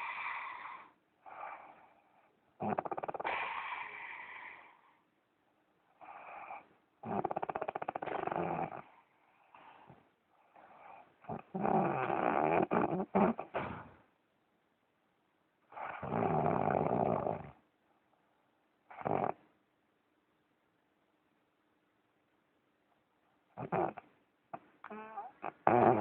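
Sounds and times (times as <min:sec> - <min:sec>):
man snoring heavily: 0:07.0 - 0:08.9.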